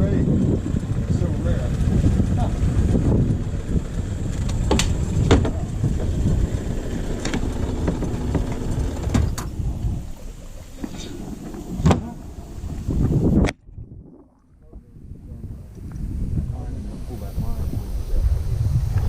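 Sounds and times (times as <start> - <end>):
outboard motor rumble: 0.0 - 19.0
wind noise: 0.0 - 19.0
sharp knocks: 4.4 - 9.6.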